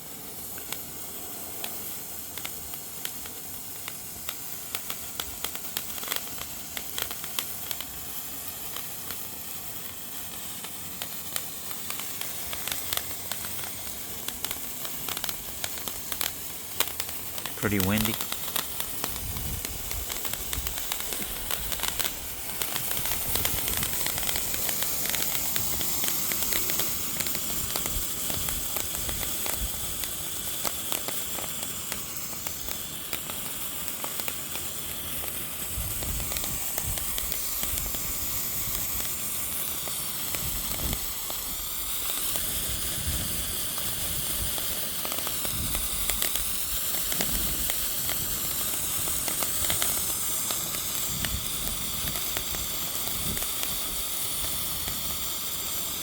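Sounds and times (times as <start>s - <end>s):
firework flare hissing: 0.0s - 56.0s
wind buffeting microphone: 19.2s - 20.0s.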